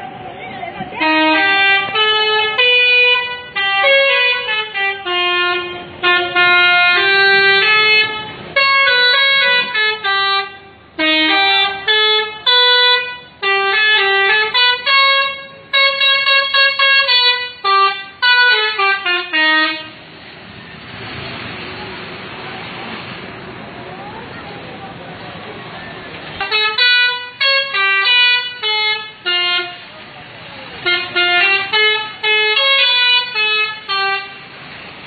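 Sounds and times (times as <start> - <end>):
musical bus horn playing tune: 1.0 - 20.2, 26.4 - 29.9, 30.8 - 34.7.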